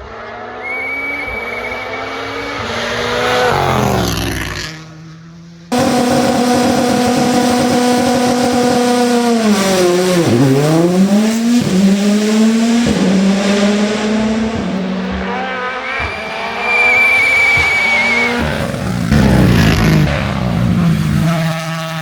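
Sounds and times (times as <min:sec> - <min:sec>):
rally car engine revving: 0:00.0 - 0:22.0
gear upshifts: 0:00.4 - 0:22.0
thin high whine: 0:11.8 - 0:20.9.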